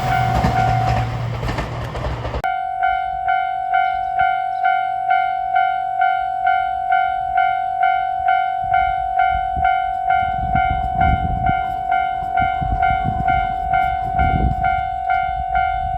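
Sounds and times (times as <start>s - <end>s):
train wheels rumbling over rail joints: 0.0s - 2.5s, 9.4s - 15.9s
level-crossing alarm bell ringing: 2.4s - 15.9s.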